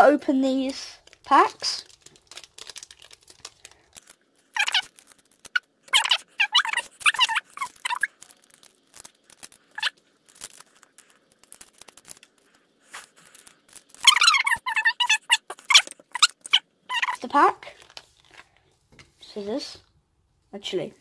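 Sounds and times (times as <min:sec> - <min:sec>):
foil wrappers crinkling and tearing: 0:00.5 - 0:16.6, 0:17.7 - 0:18.6
squeaky sounds: 0:04.5 - 0:08.3, 0:09.7 - 0:10.0, 0:14.0 - 0:17.3.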